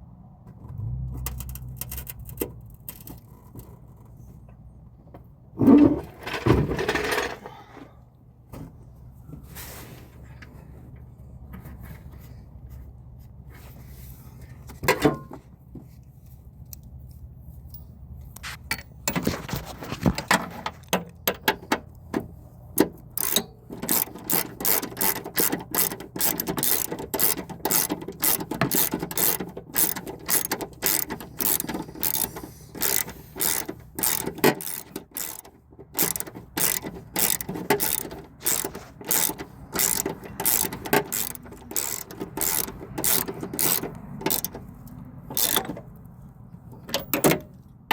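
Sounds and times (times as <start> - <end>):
socket ratchet clicking: 23.1 - 44.6, 45.3 - 45.8.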